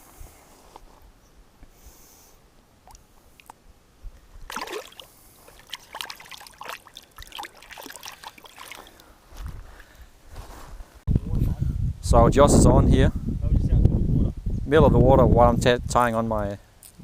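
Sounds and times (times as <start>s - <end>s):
water splashing and trickling: 4.4s - 9.2s.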